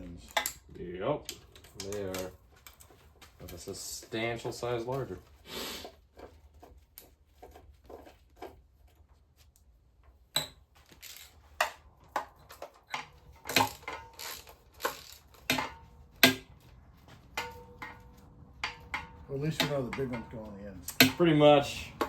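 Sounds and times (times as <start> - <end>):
metal bolts clinking: 0.0 - 5.3, 10.3 - 22.0.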